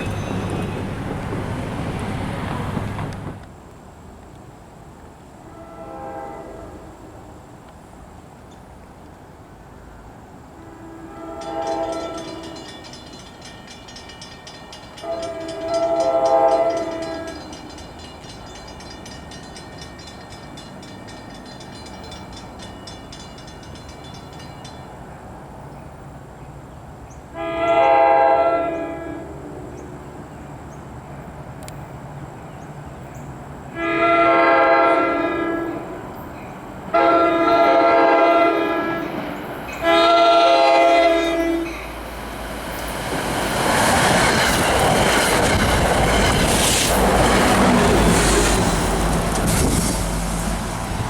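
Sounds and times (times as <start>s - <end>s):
train air horn blowing: 5.4s - 7.2s, 10.6s - 12.7s, 15.0s - 17.5s, 27.4s - 29.3s, 33.7s - 36.0s, 36.9s - 39.2s, 39.8s - 41.8s.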